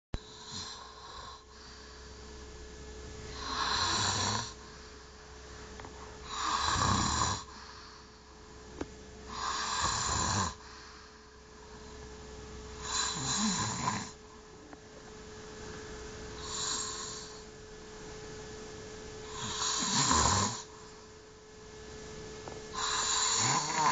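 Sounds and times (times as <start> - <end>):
man snoring: 0.2 - 1.5, 3.3 - 4.7, 6.2 - 7.9, 9.3 - 10.6, 12.8 - 14.2, 16.4 - 17.5, 19.2 - 20.8, 22.7 - 23.9.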